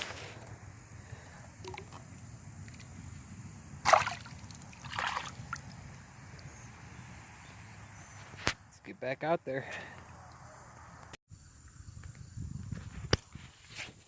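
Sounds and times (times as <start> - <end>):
water splashes: 3.8 - 5.8.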